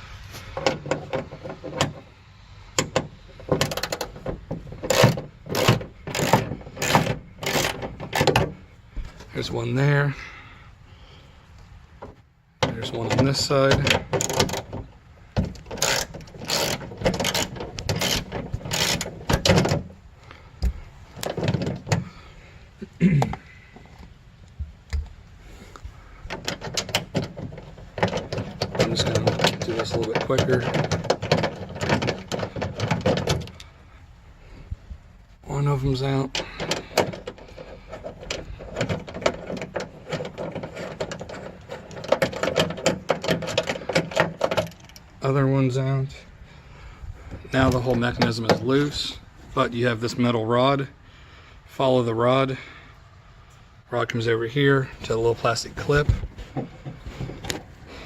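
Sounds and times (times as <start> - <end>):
hand ratchet clicking: 4.8 - 8.4, 15.4 - 19.7
ratchet wrench clicking: 15.6 - 19.1.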